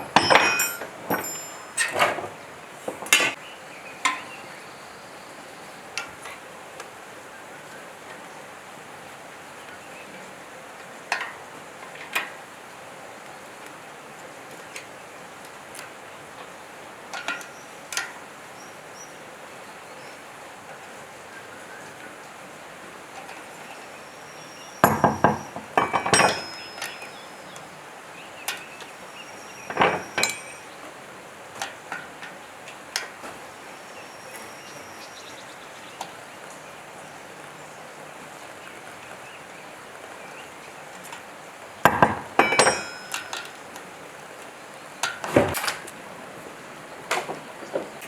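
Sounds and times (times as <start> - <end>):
metal tools clinking: 0.0 - 3.4, 24.8 - 27.6, 28.5 - 30.8, 41.9 - 43.7.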